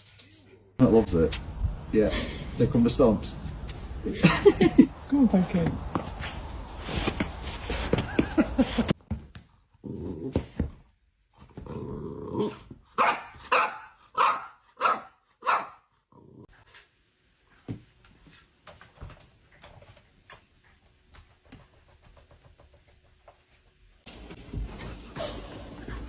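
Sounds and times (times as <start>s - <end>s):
dog growling: 9.8s - 10.6s, 11.5s - 12.7s, 16.1s - 16.5s
dog barking: 13.0s - 15.9s.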